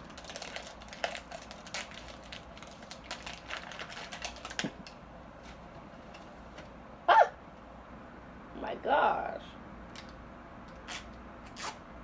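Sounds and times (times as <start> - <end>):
plastic wrapping crinkling: 0.0 - 5.6.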